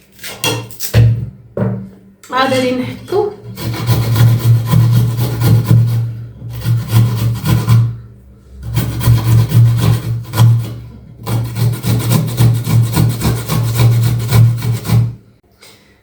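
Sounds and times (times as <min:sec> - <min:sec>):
ginger grated on hand grater: 0:03.4 - 0:08.0, 0:08.6 - 0:15.2.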